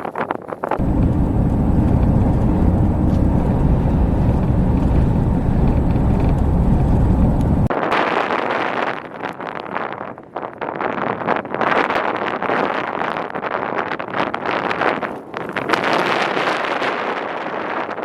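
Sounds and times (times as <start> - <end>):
wind buffeting microphone: 0.6 - 7.7
gusting rush of wind: 0.8 - 7.7.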